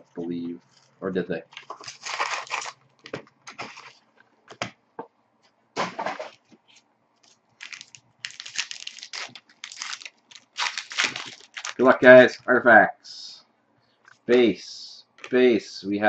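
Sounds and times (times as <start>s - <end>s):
foil wrappers tearing and crinkling: 1.5s - 2.8s, 3.5s - 4.0s, 7.6s - 11.9s
cards being handled: 6.7s - 11.8s.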